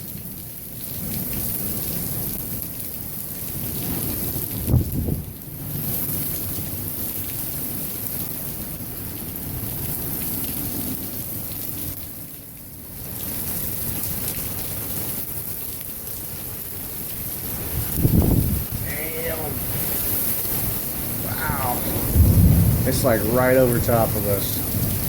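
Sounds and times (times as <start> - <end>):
heavy rain pouring: 0.0 - 25.0
low rumble of thunder: 3.7 - 6.0, 17.7 - 25.0.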